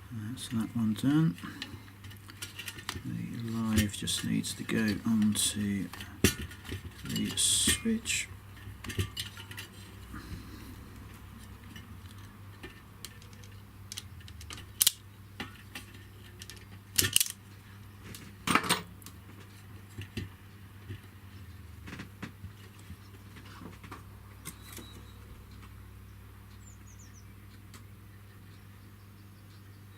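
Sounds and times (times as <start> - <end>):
metal parts and tools clicking: 2.0 - 10.2, 11.0 - 17.4.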